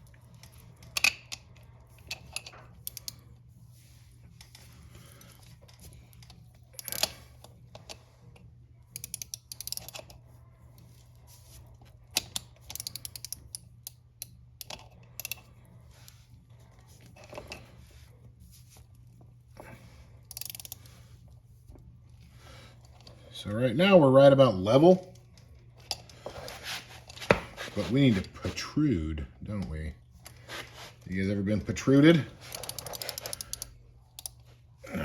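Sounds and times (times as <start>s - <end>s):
steady low hum: 0.0s - 35.0s
hand tool ratcheting: 9.0s - 10.1s, 12.2s - 13.5s, 20.3s - 20.8s.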